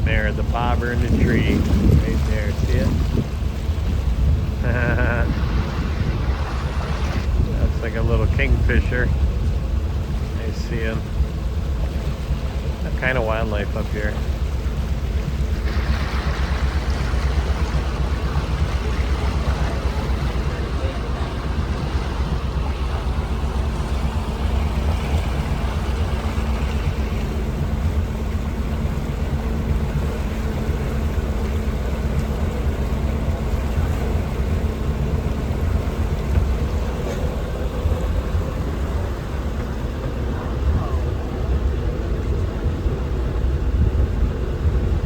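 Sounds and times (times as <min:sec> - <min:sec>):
motorboat engine running: 0:00.0 - 0:45.0.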